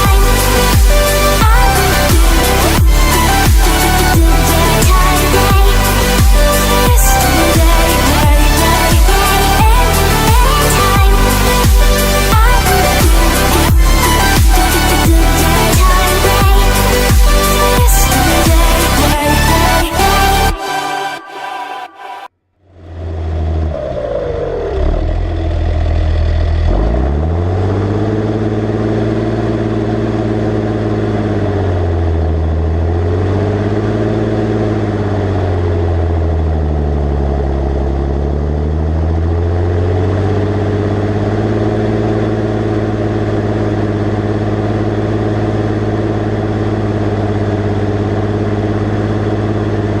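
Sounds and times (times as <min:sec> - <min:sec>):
tractor diesel engine running: 0:25.1 - 0:50.0.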